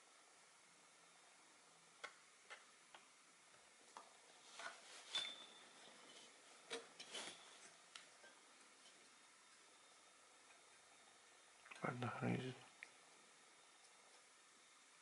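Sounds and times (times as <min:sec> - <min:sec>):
brief high squeak: 0:05.1 - 0:05.6.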